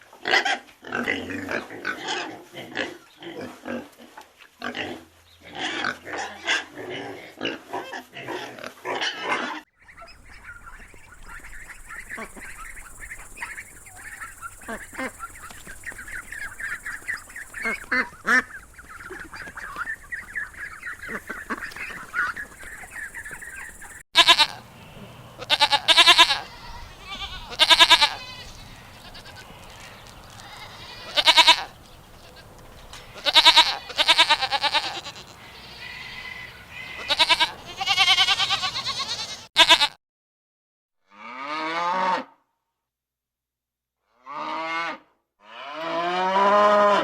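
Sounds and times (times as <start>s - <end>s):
ducks quacking: 8.1s - 39.9s
sheep bleating: 24.2s - 24.7s, 25.4s - 32.5s, 33.1s - 40.0s.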